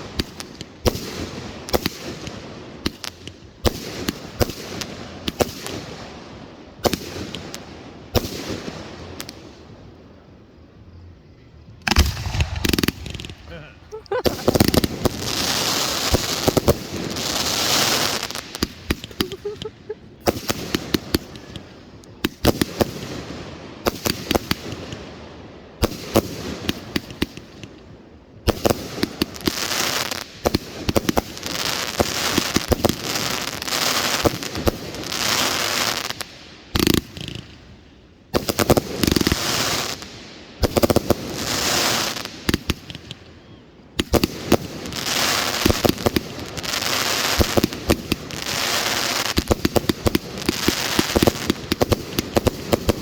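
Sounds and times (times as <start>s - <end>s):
firework crackling volleys: 0.0s - 10.2s, 11.8s - 37.7s, 38.3s - 53.0s
firework shells bursting: 11.8s - 23.0s.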